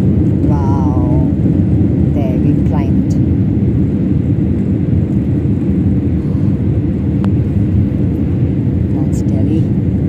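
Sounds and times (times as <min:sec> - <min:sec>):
jet engines and airflow rumble: 0:00.0 - 0:10.0.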